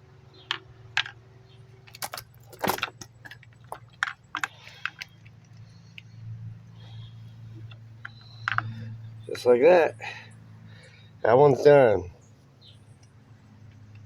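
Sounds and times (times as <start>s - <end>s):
low steady hum: 0.0s - 14.0s
clicks and rattles of small parts: 1.8s - 6.1s.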